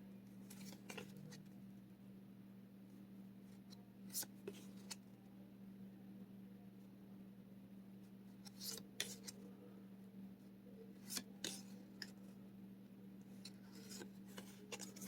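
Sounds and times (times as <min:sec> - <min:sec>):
trading cards tapping and rustling: 0:13.4 - 0:15.0.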